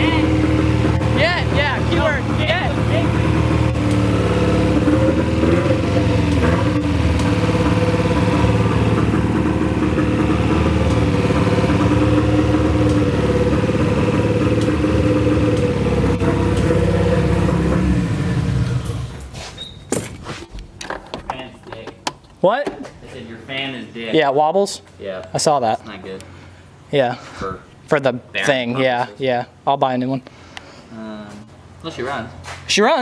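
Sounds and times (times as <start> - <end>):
uneven engine idling: 0.0 - 19.4.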